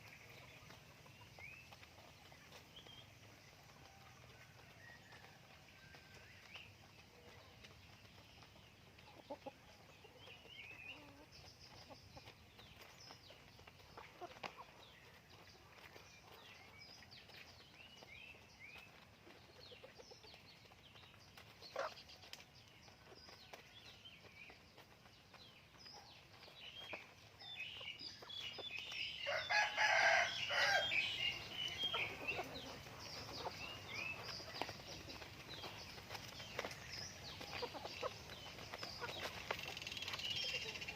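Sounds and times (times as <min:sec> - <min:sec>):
chickens clucking: 0:00.0 - 0:40.9
rooster crowing: 0:29.2 - 0:31.1.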